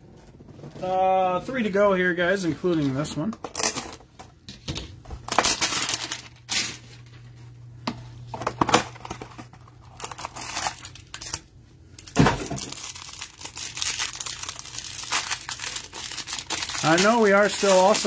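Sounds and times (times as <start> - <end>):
plastic wrapper crinkling: 5.3 - 7.2, 8.7 - 18.0
cardboard tearing: 9.9 - 11.4, 12.6 - 18.0.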